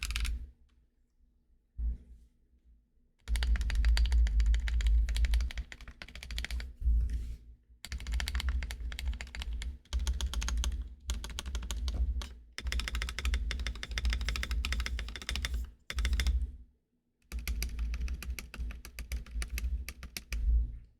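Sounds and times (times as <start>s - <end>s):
mechanical keyboard typing: 0.0s - 0.4s, 3.2s - 6.8s, 7.8s - 16.4s, 17.3s - 20.4s.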